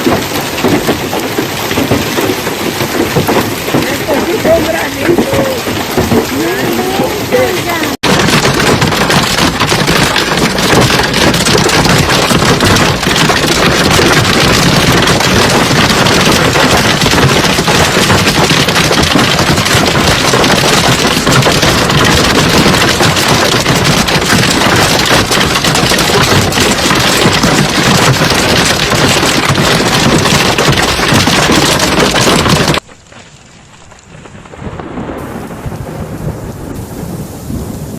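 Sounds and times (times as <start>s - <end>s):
hail clattering: 0.0s - 36.8s
rain hissing: 32.8s - 37.9s.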